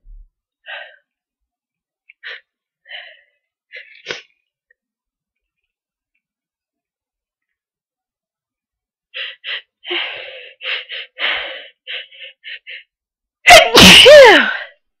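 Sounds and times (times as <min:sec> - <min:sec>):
loud sneeze: 0:13.5 - 0:14.6.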